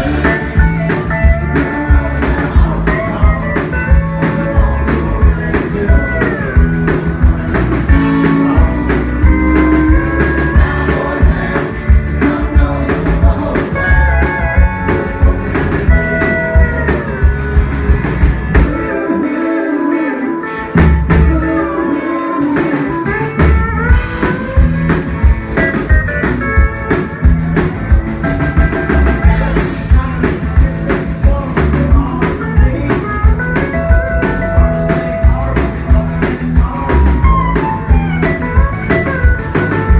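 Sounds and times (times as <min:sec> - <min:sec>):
live country band: 0:00.0 - 0:39.9.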